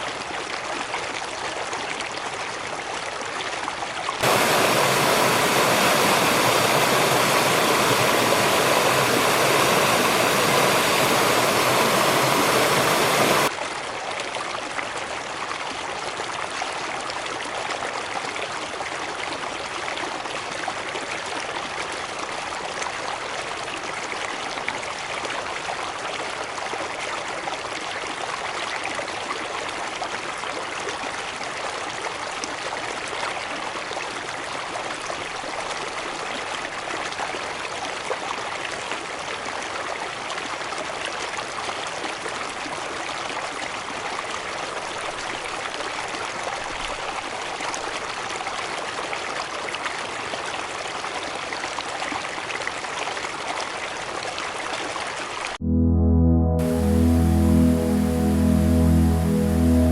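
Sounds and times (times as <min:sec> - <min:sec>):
water rushing from a cascade: 0:04.2 - 0:28.8.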